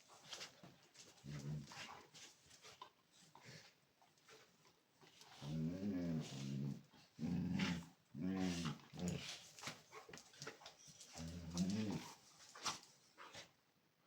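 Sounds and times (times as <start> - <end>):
dogs growling: 5.3 - 9.4, 11.1 - 12.2.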